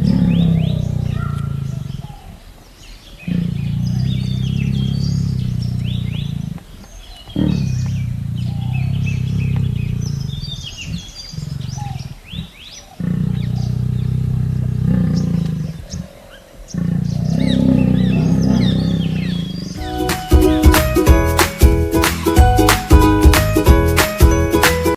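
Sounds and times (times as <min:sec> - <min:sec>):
tiger making deep low calls: 0:00.0 - 0:02.5, 0:03.1 - 0:19.8
songbirds chirping: 0:00.0 - 0:24.9.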